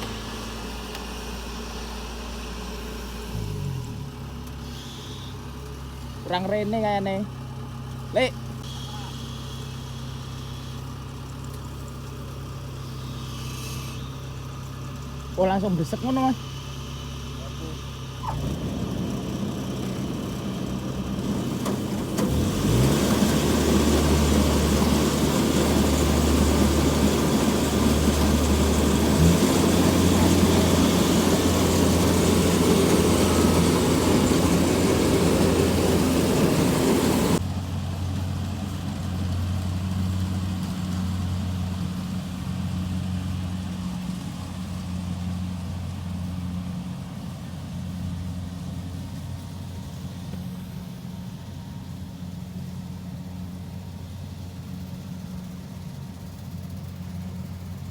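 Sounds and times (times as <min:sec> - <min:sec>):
combine harvester engine running: 0:00.0 - 0:57.9
heavy mechanical rushing noise: 0:18.3 - 0:37.5.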